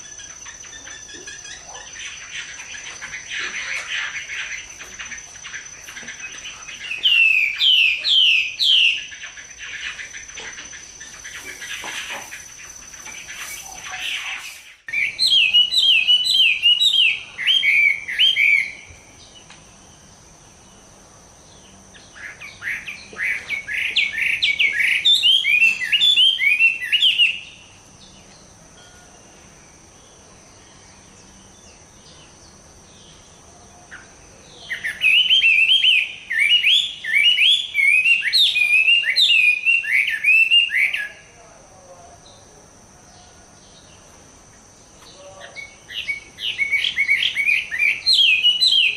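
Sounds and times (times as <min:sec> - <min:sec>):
bird singing whistled phrases: 0:13.4 - 0:18.9, 0:22.5 - 0:27.6, 0:34.6 - 0:41.2, 0:45.4 - 0:48.9.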